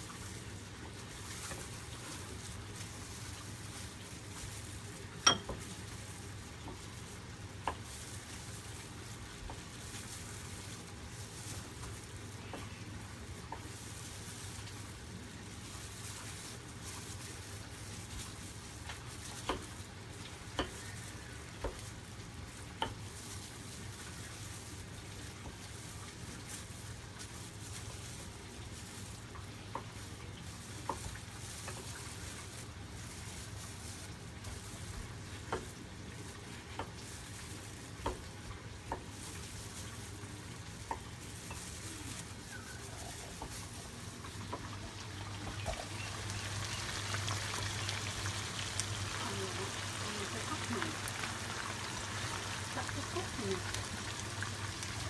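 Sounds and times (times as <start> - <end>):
food sizzling in oil: 0.0 - 55.0
utensils clinking on dishes: 5.2 - 5.6.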